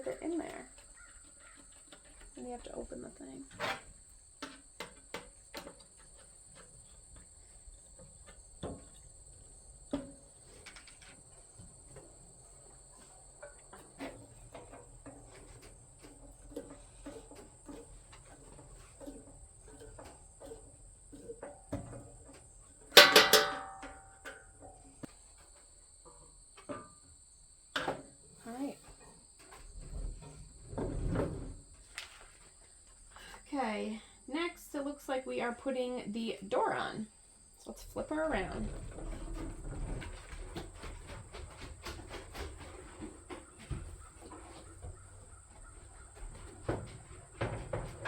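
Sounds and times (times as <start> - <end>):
crickets chirping: 16.1 - 41.0
loud ringing metal clank: 23.0 - 24.2.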